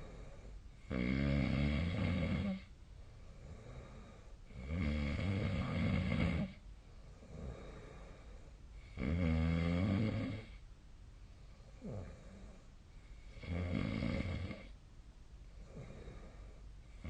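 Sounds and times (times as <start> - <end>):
person snoring: 0.0 - 2.7, 3.4 - 6.6, 7.2 - 10.6, 13.3 - 14.7
quiet breathing: 0.0 - 17.0.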